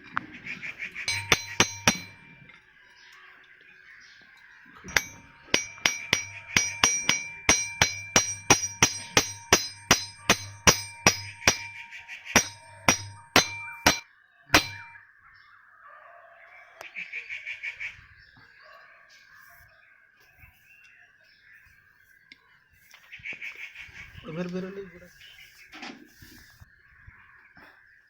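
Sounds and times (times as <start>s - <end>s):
hammer striking metal with ringing: 1.1s - 2.5s, 4.9s - 14.0s, 14.6s - 15.0s.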